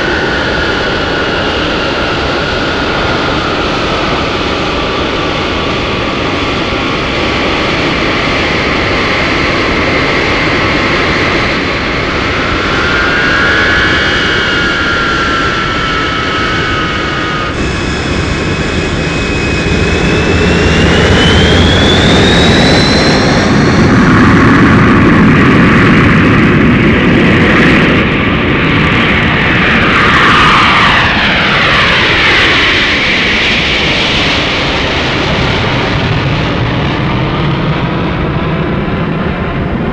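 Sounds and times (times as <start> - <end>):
aircraft engine drone: 0.0 - 39.9
gliding whines: 11.1 - 25.0.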